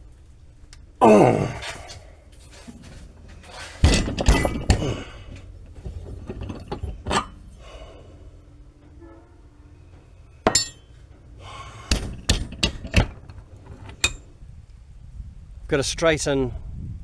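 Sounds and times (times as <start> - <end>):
light metal knocks and clinks: 2.6 - 7.6, 10.4 - 11.1, 11.9 - 14.3
heavy hammer blows on metal: 10.5 - 14.2.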